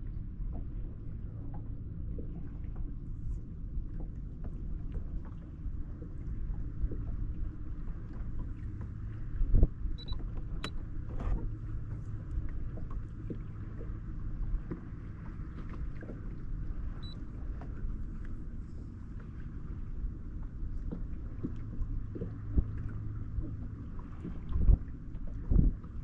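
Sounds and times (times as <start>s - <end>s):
water and wind rumble: 0.0s - 26.0s
short high beeps: 10.0s - 10.2s.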